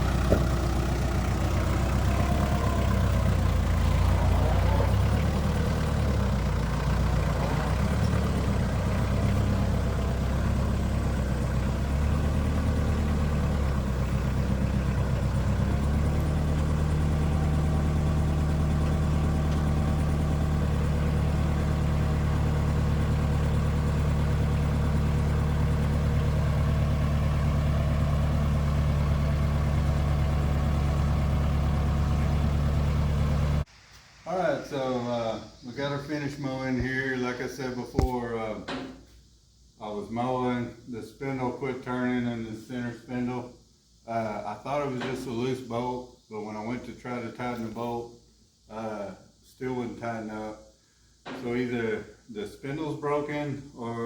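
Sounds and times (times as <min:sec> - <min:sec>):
tractor engine running: 0:00.0 - 0:33.7.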